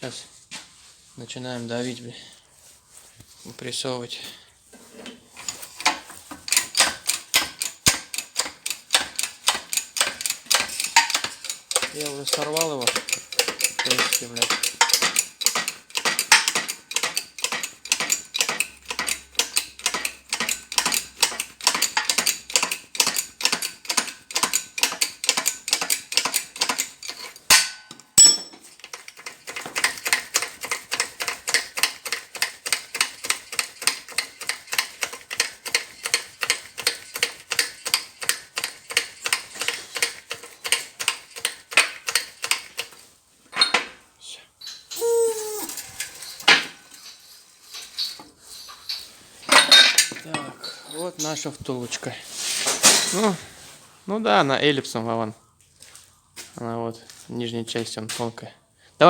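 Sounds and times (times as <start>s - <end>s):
ratchet wrench clicking: 5.5s - 28.0s, 28.8s - 43.0s.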